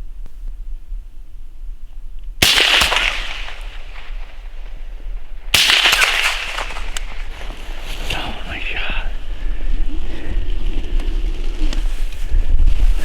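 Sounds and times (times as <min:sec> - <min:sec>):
rifle shots with echo: 0:02.4 - 0:08.7.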